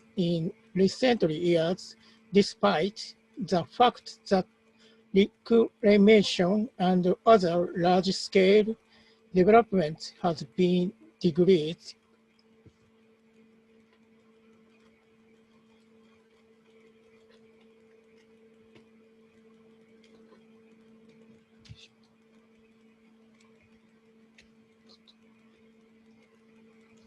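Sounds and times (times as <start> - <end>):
faint steady hum: 0.0 - 27.0
faint clicks: 12.3 - 27.0.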